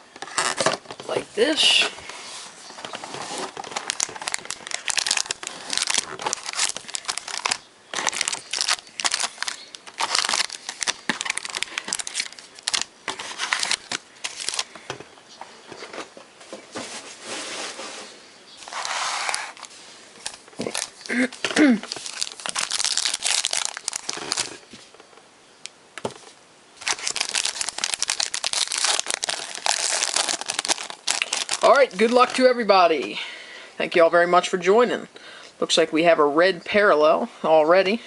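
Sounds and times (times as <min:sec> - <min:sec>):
plastic packaging crinkling: 0:00.2 - 0:14.9, 0:18.6 - 0:24.9, 0:26.8 - 0:32.7.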